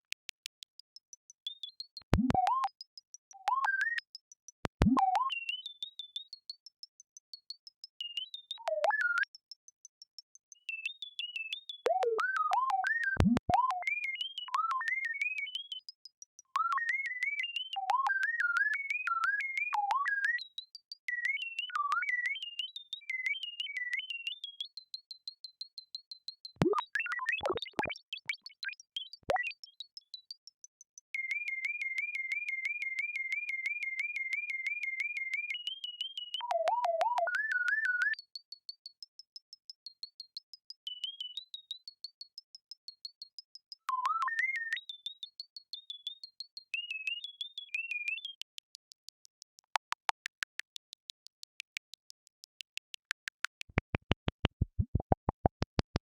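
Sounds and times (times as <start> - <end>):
synthesized robot beeps and chirps: 2.2 - 2.7, 3.4 - 4.0, 4.8 - 5.5, 26.6 - 29.6, 36.2 - 38.2, 43.9 - 44.9.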